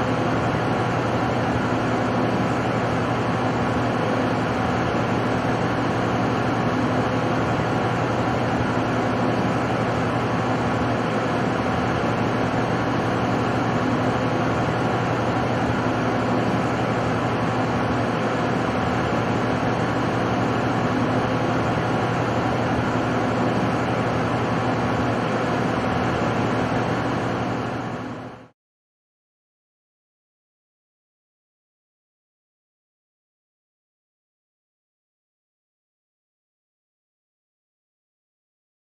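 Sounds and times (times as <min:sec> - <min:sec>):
welding machine mains hum: 0:00.0 - 0:28.4
rushing machine noise: 0:00.0 - 0:28.5.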